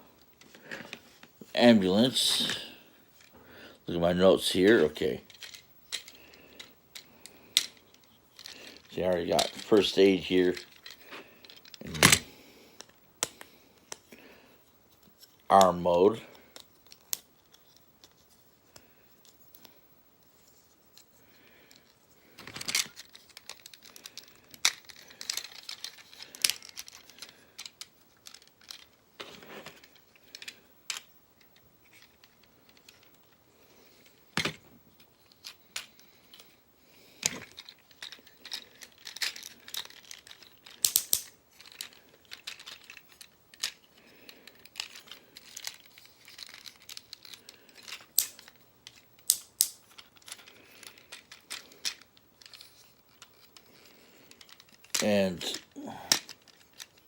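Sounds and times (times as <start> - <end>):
plastic toy parts clicking: 10.5 - 12.2, 21.7 - 33.3, 37.2 - 57.0.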